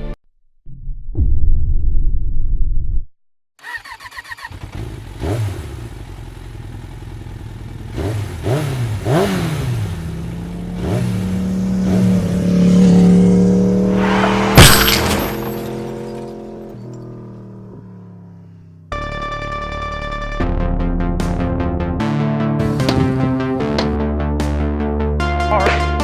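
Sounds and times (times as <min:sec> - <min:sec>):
motorcycle engine revving: 0:03.6 - 0:18.9
sharp loud impact: 0:13.6 - 0:16.1
background music: 0:19.0 - 0:26.0.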